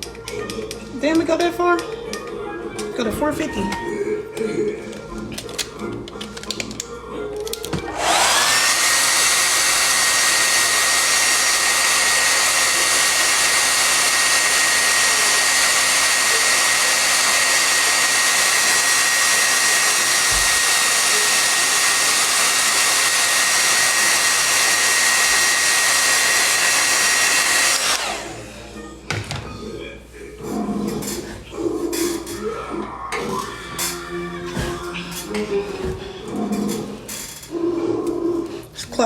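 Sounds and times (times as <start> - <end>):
hair dryer running: 7.8 - 28.8.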